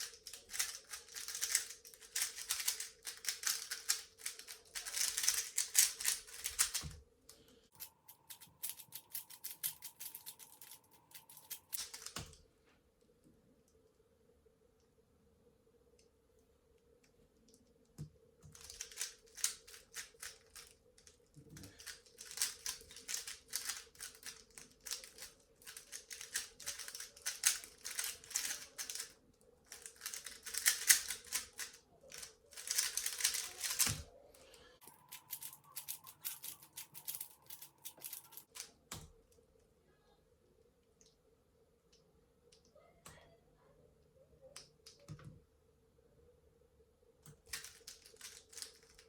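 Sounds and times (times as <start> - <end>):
puzzle cube layers clicking: 0.0 - 6.8.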